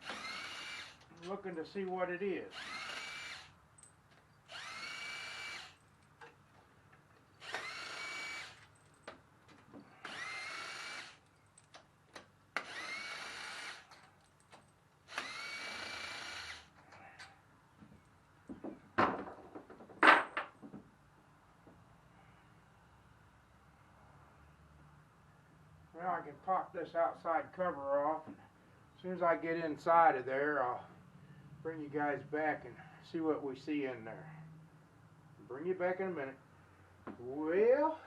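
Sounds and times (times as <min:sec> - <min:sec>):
power drill whining: 0:00.0 - 0:01.2, 0:02.5 - 0:03.6, 0:04.5 - 0:05.8, 0:07.4 - 0:08.7, 0:09.8 - 0:11.2, 0:12.6 - 0:14.1, 0:15.1 - 0:16.8.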